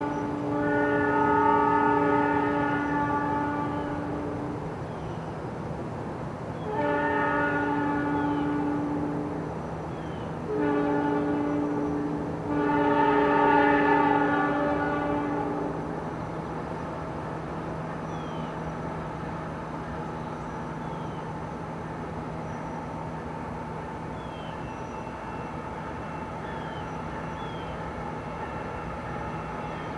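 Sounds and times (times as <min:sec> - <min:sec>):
locomotive air horn blasts: 0:00.0 - 0:04.5, 0:06.6 - 0:09.4, 0:10.4 - 0:16.0, 0:27.1 - 0:29.9.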